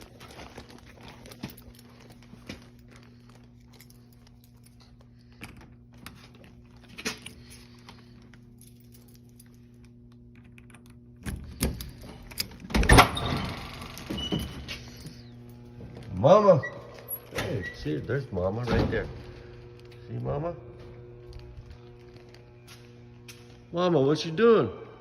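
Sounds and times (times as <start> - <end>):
keys jingling: 0.0 - 18.6
door opening with rattling: 11.2 - 15.0.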